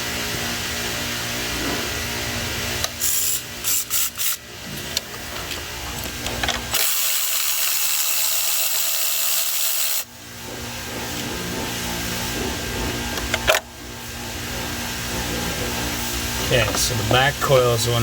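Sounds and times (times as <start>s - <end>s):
compressed air hissing: 2.8s - 4.5s.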